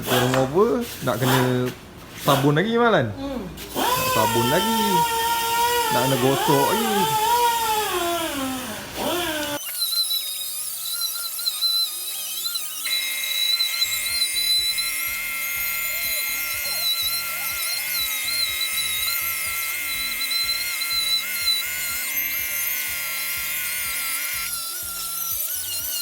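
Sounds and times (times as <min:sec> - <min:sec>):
wire brush grinder whining: 0:00.0 - 0:02.6, 0:03.6 - 0:26.0.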